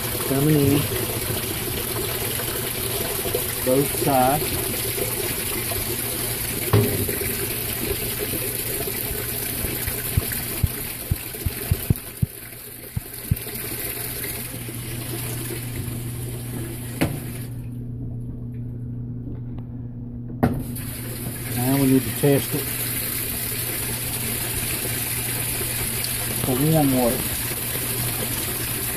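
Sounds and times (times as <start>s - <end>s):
water rushing into washing machine: 0.0s - 17.8s, 20.4s - 28.9s
low hum: 17.4s - 20.7s.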